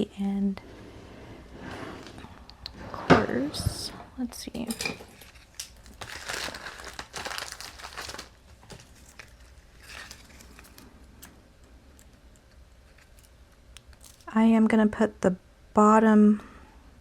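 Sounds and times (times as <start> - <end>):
paper rustling and crinkling: 5.1 - 11.3.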